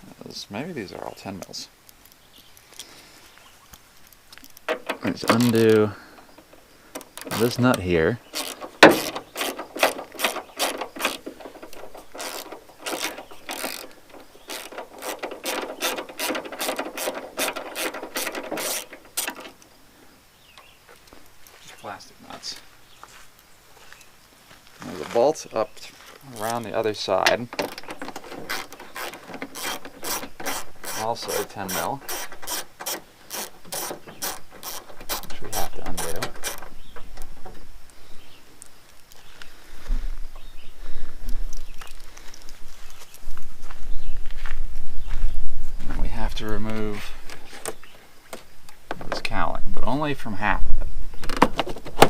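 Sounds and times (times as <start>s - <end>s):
socket ratchet clicking: 8.4s - 19.7s, 27.6s - 31.1s, 31.7s - 36.7s.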